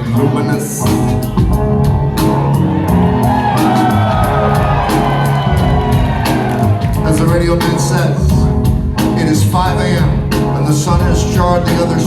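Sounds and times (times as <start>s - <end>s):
bass guitar: 0.0s - 12.0s
drums: 0.0s - 12.0s.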